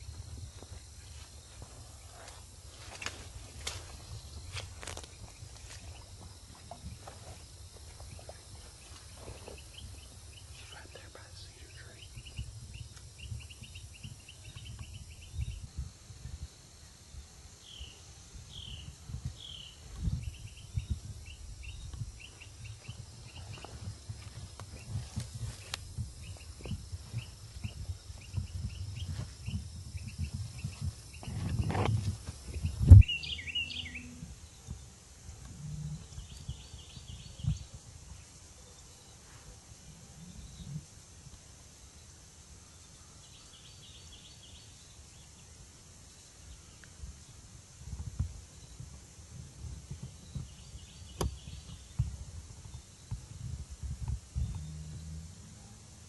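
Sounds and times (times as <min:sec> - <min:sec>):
birds chirping: 0:01.8 - 0:15.8, 0:17.6 - 0:34.9.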